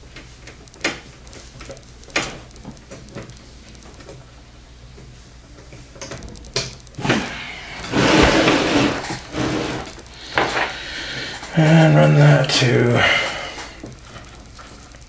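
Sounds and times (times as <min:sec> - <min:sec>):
sharp cable clicks: 0:00.0 - 0:04.3, 0:05.6 - 0:08.1
cable rustling scrape: 0:07.8 - 0:10.7.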